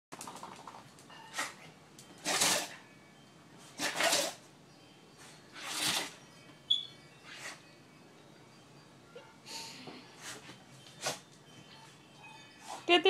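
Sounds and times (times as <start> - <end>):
dog sneezing: 2.2 - 2.8, 3.8 - 4.4.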